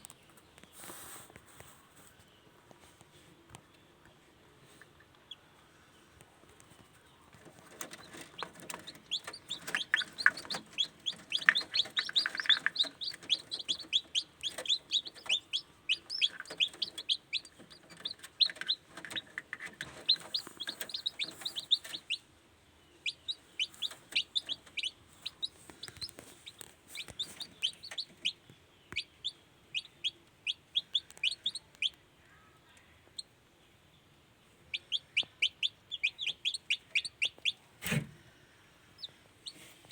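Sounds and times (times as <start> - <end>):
chicks peeping: 4.8 - 22.3, 22.9 - 32.0, 34.4 - 38.0, 38.8 - 39.9.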